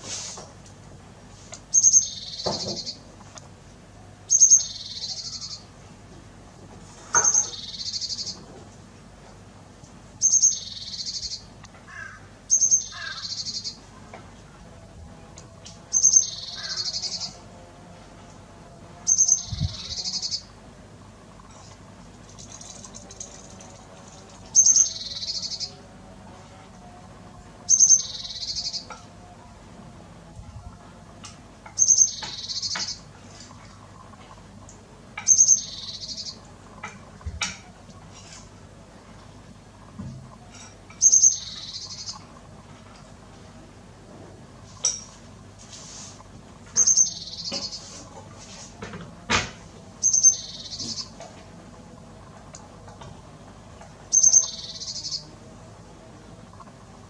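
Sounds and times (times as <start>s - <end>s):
bird calling: 10.2s - 13.8s, 15.9s - 17.4s, 54.1s - 55.3s.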